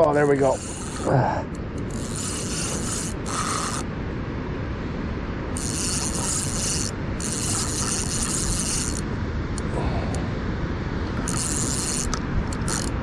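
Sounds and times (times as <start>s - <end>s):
fishing reel ratcheting: 0.0s - 1.1s, 1.8s - 3.9s, 5.5s - 9.0s, 11.2s - 13.0s.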